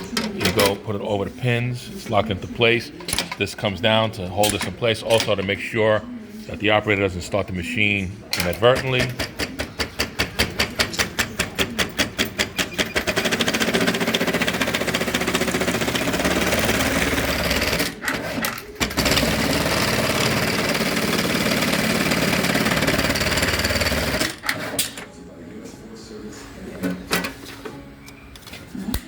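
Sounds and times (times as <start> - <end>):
sewing machine stitching: 8.4 - 25.0.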